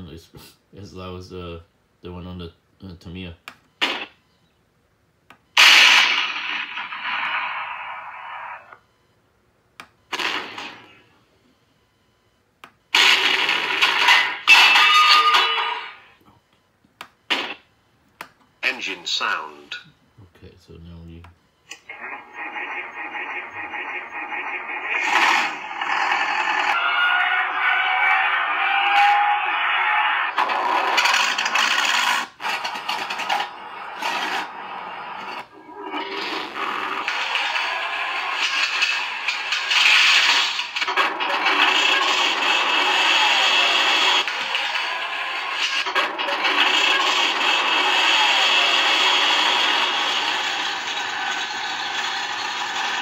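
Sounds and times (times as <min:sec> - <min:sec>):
tank cannon fire from small speaker: 0:05.6 - 0:07.8.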